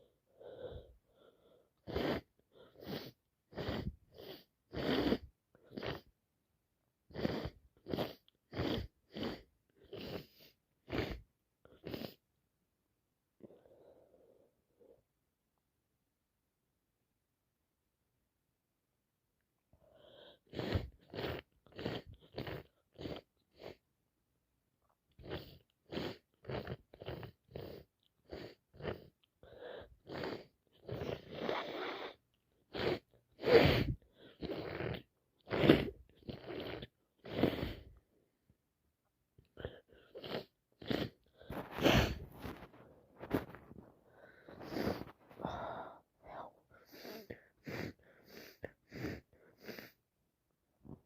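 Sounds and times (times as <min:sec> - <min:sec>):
person sniffling: 0:25.2 - 0:38.0, 0:39.6 - 0:50.0
person sneezing: 0:41.5 - 0:42.6.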